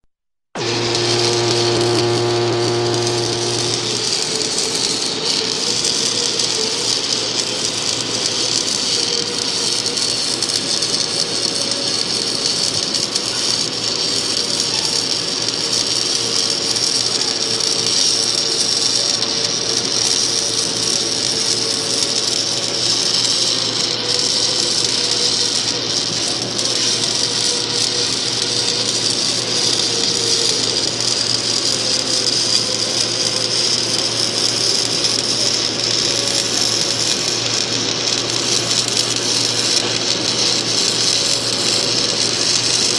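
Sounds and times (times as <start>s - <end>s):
low hum: 0.6s - 5.1s.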